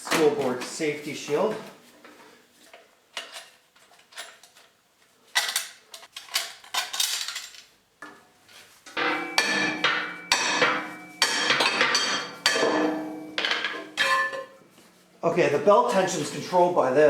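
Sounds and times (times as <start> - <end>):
steel parts clanking and scraping: 9.0 - 14.6.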